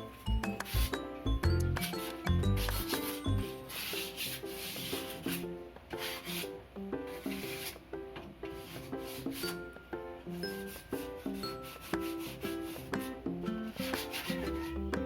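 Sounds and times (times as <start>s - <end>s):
background music: 0.0s - 15.0s
sandpaper rubbing on metal: 1.8s - 6.5s, 13.8s - 14.8s.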